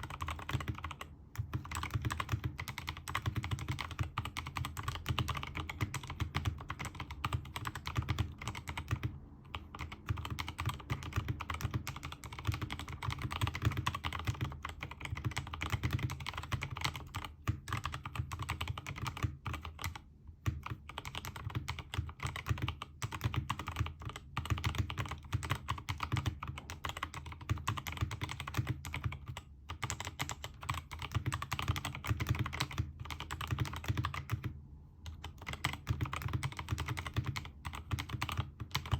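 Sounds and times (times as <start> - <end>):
typing on mechanical keyboard: 0.0 - 38.9.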